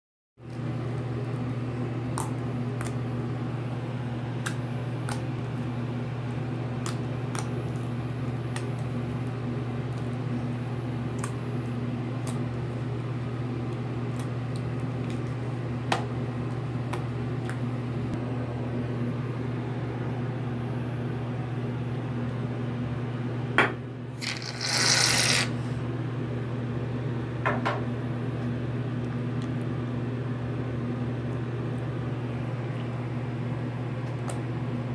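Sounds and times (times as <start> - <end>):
aerosol can hiss: 24.2 - 25.6.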